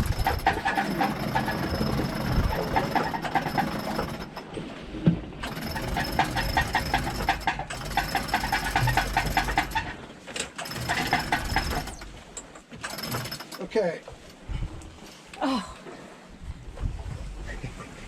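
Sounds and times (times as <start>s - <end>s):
winch pawls clicking: 0.0s - 4.5s, 5.4s - 13.8s.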